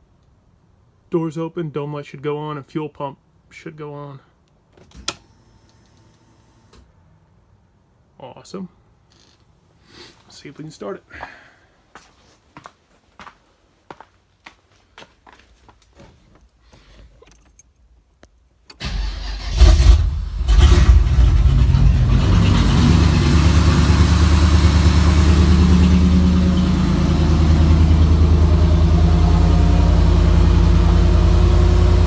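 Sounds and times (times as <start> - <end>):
starter motor cranking: 18.8 - 23.2
car engine idling: 18.8 - 32.0.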